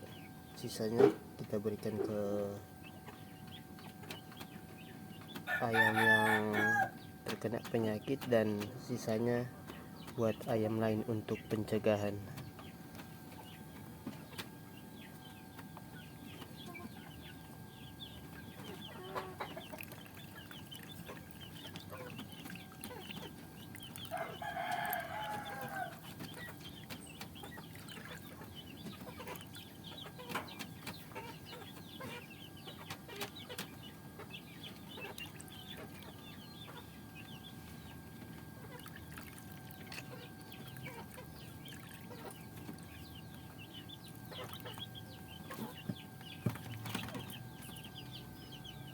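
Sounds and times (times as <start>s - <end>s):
chickens clucking: 0.0s - 48.9s
rooster crowing: 5.5s - 7.0s, 24.1s - 26.0s.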